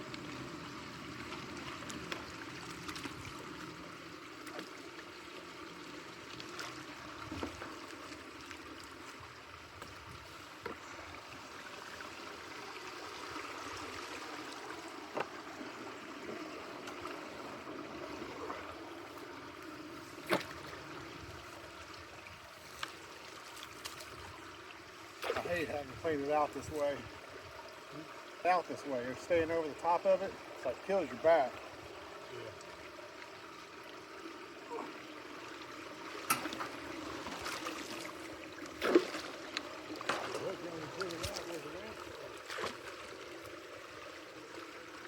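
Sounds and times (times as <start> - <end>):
water trickling through culvert: 0.0 - 45.0.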